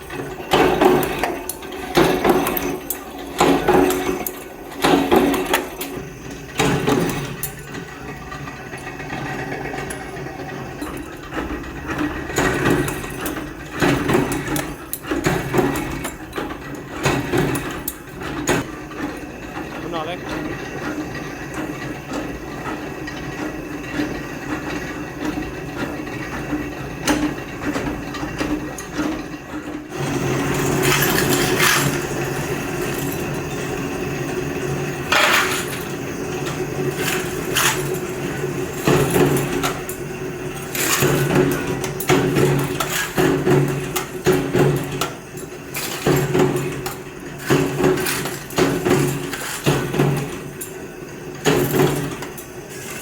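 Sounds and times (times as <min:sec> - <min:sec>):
metalworking machinery clanking: 0:00.0 - 0:53.0
steady machine hum: 0:00.0 - 0:53.0
metal pieces clinking: 0:30.4 - 0:34.2, 0:34.9 - 0:53.0.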